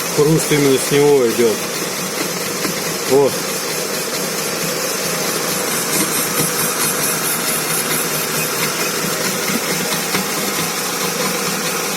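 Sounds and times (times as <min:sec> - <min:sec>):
car engine running: 0:00.0 - 0:11.9
driveshaft rattle and knock: 0:05.8 - 0:11.7.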